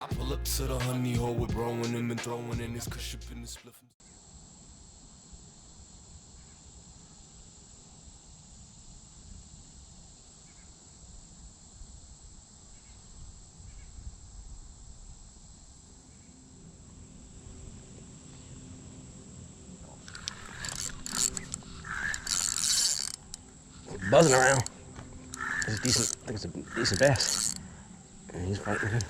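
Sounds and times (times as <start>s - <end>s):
high-pitched insect drone: 4.0s - 29.0s
low wind rumble: 11.8s - 29.0s
faint bird chirps: 17.0s - 29.0s.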